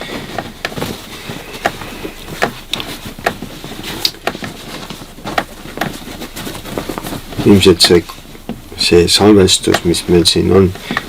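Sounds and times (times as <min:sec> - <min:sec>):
bag rustling: 0:00.0 - 0:11.0.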